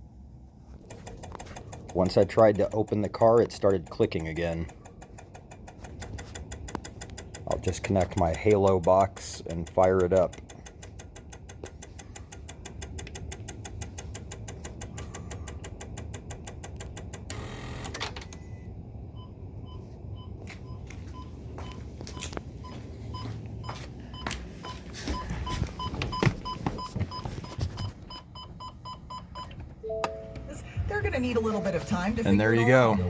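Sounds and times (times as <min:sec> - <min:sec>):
car rapid clicking: 0:00.7 - 0:17.4.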